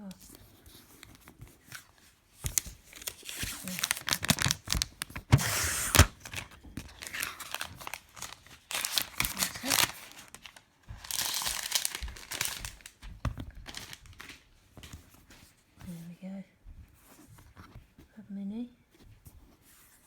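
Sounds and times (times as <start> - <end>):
packaging crinkling and tearing: 2.4 - 14.9.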